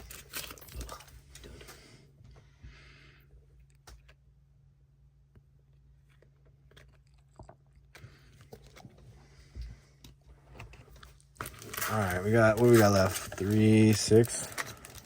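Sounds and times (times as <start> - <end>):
wrapper crinkle: 0.0 - 1.4, 11.0 - 15.0
low steady hum: 0.0 - 15.0.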